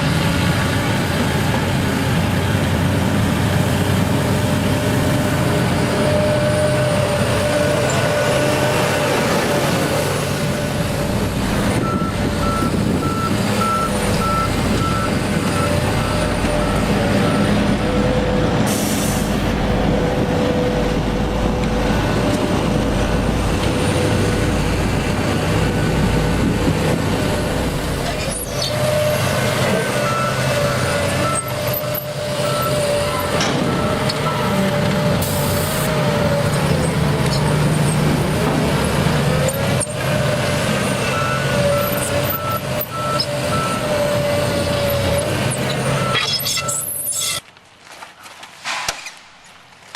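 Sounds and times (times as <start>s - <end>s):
construction machinery engine rumble: 0.0s - 47.1s
reversing alarm beeping: 11.8s - 17.6s, 30.0s - 34.5s, 41.1s - 45.0s, 45.9s - 47.1s.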